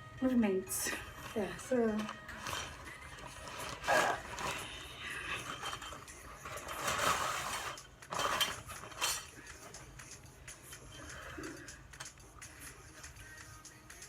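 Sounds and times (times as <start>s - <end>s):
tripod stand parts clinking: 1.0s - 9.8s.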